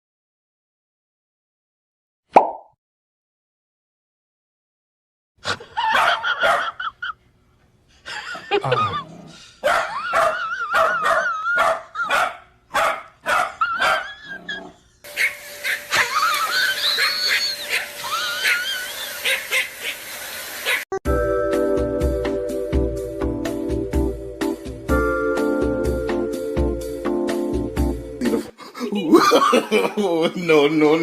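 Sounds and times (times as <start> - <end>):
dog barking and yipping: 5.8 - 7.0, 9.6 - 20.9
dog whining: 13.4 - 19.7
music: 21.1 - 28.5.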